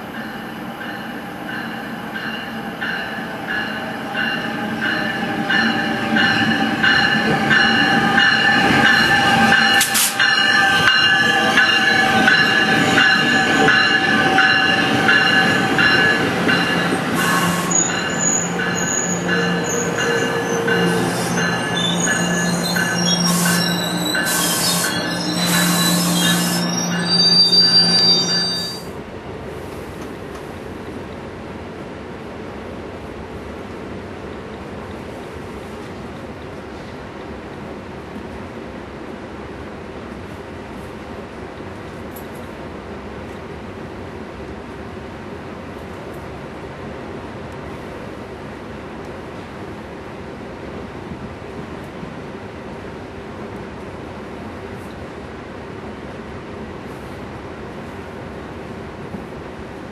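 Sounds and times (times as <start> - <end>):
train wheels squealing: 0.2 - 28.9.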